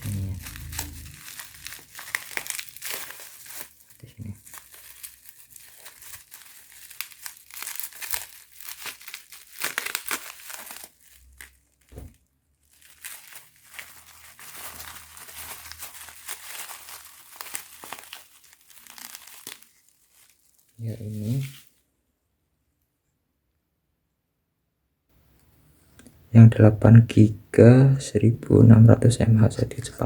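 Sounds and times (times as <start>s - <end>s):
plastic packaging crinkling: 0.0s - 21.8s.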